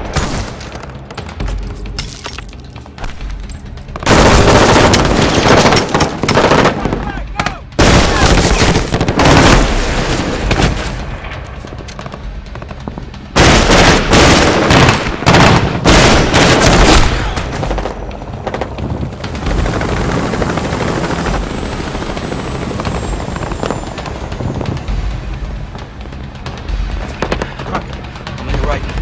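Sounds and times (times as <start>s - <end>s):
film score: 0.0s - 29.0s
automatic gunfire: 4.1s - 7.1s, 7.8s - 11.5s, 13.4s - 18.6s.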